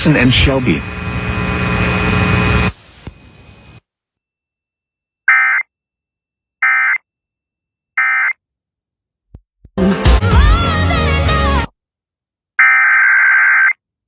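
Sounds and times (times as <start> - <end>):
steady buzzing hum: 0.5 - 3.8.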